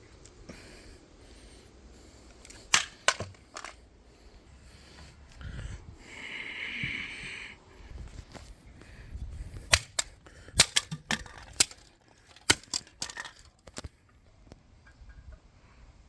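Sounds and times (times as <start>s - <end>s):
plastic casings smashing: 2.4s - 3.8s, 9.7s - 13.9s.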